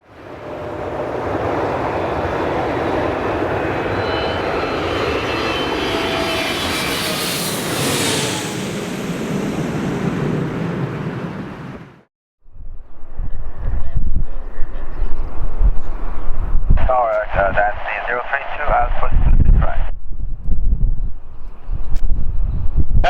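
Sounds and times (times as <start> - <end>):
jet engines rushing: 0.0 - 12.1, 16.8 - 19.9.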